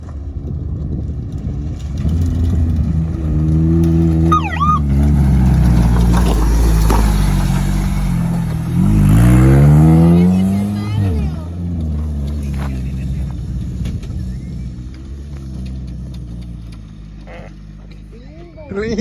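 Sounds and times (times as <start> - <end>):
high chirping squeal: 4.3 - 4.9
off-road vehicle engine revving: 5.5 - 13.2.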